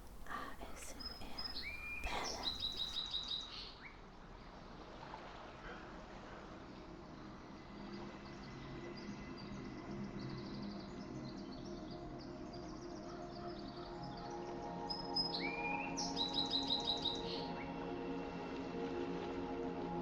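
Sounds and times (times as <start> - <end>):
soft relaxation music: 0.0 - 20.0
birdsong chirps and trill: 1.0 - 3.7.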